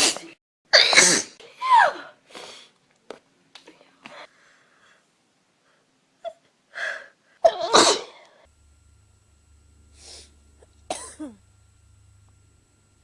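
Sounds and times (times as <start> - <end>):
woman sneezing: 0.0 - 2.2, 7.4 - 8.2, 10.9 - 11.4
woman breathing in: 4.1 - 5.0, 9.9 - 10.4.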